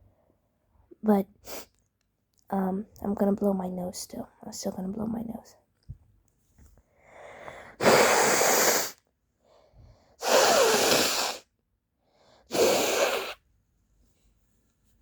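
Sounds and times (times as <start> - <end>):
woman blowing her nose: 7.7 - 9.0, 10.2 - 11.5, 12.5 - 13.4.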